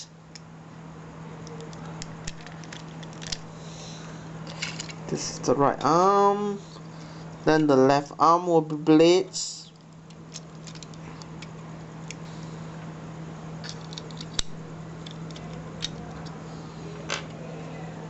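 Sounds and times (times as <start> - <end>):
plastic toy parts clicking: 1.4 - 3.4, 10.1 - 11.5.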